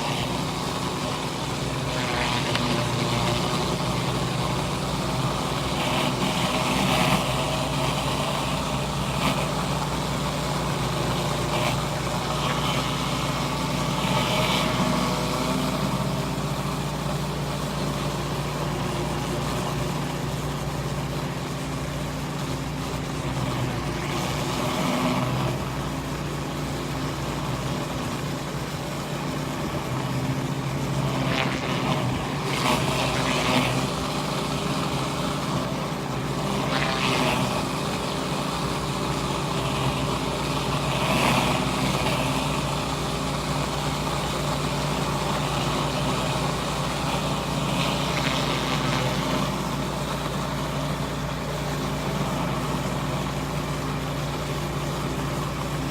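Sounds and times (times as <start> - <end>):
pressure washer engine drone: 0.0 - 55.9.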